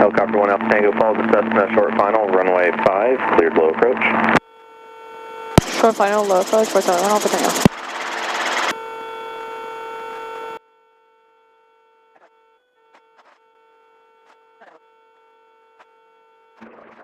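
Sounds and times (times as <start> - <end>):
electrical hum: 0.0 - 17.0
burst of noise: 5.6 - 8.7
radio hiss: 5.6 - 8.7.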